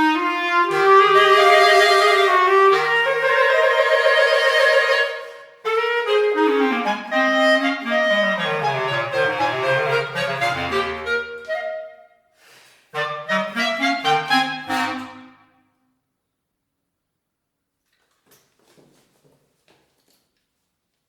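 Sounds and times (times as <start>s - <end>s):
clarinet music: 0.0s - 12.3s, 12.9s - 15.7s.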